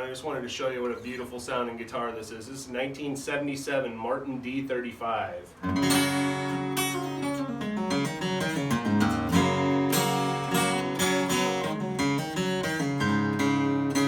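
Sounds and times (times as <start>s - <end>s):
acoustic guitar strumming chords: 5.5s - 14.0s.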